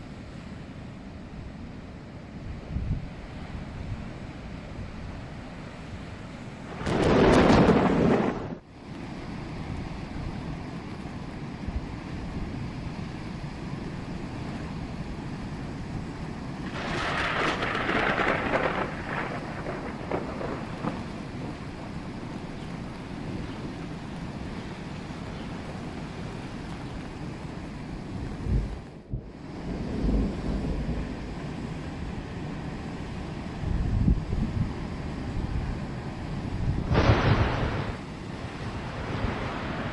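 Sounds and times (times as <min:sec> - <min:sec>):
stormy sea: 0:00.0 - 0:39.9
wind: 0:00.0 - 0:39.9
waves crashing on breakwater: 0:03.1 - 0:33.6, 0:34.7 - 0:39.9
thunder: 0:06.7 - 0:09.8, 0:16.6 - 0:27.1, 0:28.2 - 0:31.7, 0:36.8 - 0:39.9.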